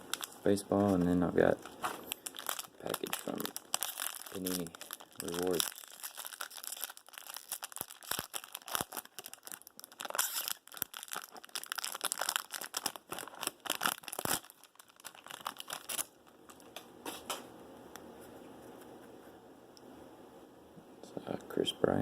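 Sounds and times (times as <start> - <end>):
packaging tearing and crinkling: 0.1 - 16.8.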